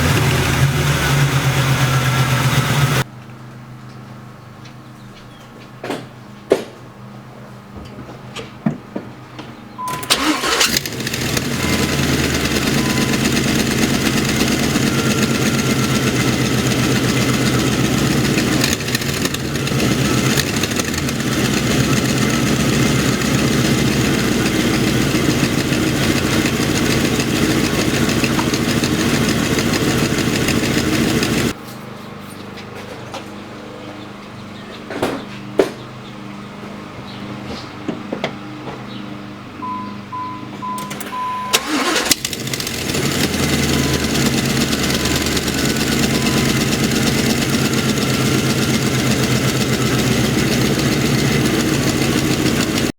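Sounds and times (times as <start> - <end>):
engine cranking and starting: 0.0 - 3.0, 9.8 - 31.6, 40.7 - 52.9
car engine running: 0.0 - 3.1, 9.8 - 31.6, 39.6 - 52.9
knocking tick from engine: 23.7 - 31.5.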